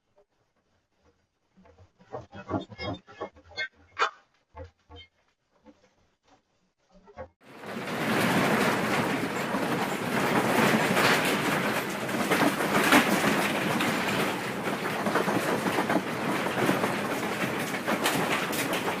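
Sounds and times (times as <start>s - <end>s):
shaken objects rattling and knocking: 7.5s - 19.0s.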